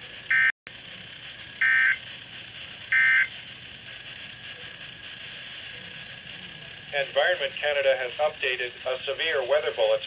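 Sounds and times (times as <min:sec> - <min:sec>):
radio hiss: 0:06.5 - 0:10.0.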